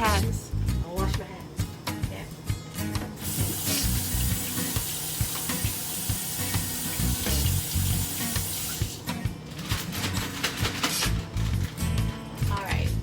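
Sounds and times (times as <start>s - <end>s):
tap running: 3.1s - 12.3s
hands washing under water: 3.2s - 9.0s.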